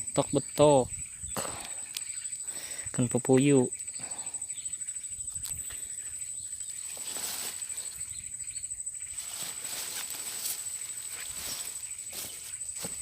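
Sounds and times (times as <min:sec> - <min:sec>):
insect trilling: 0:00.0 - 0:13.0
rustling: 0:06.8 - 0:08.0, 0:09.1 - 0:13.0.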